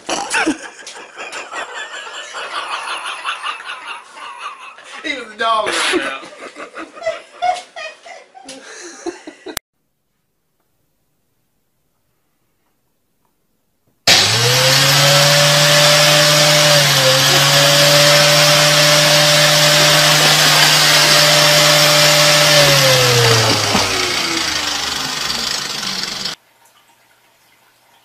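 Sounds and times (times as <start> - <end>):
motor running with whining hum: 14.1 - 26.4.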